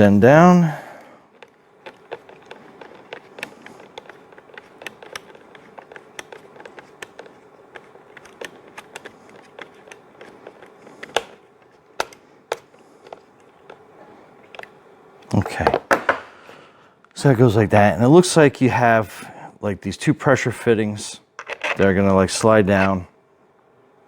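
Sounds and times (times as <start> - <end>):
screwdriver driving screw into plastic: 1.4 - 11.4.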